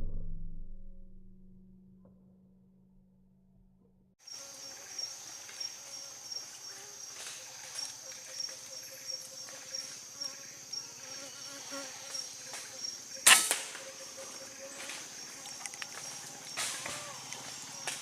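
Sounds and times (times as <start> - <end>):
insects chirping: 4.2 - 18.0
air rifle shot: 13.2 - 13.8.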